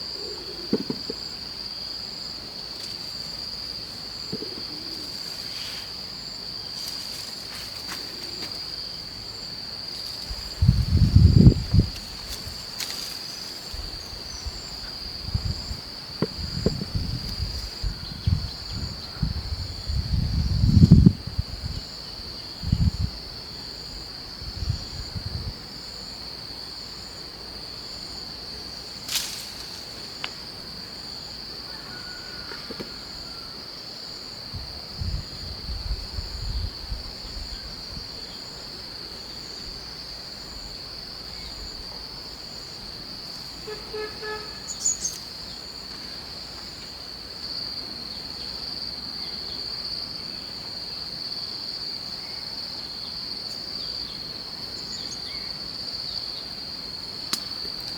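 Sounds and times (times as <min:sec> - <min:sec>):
insects trilling: 0:00.0 - 0:57.9.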